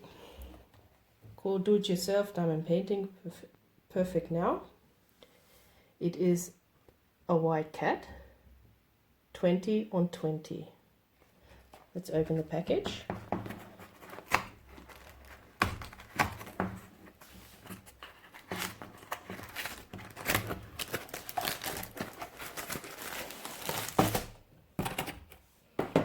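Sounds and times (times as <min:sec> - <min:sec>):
wrapping crinkling and tearing: 0:13.7 - 0:24.4.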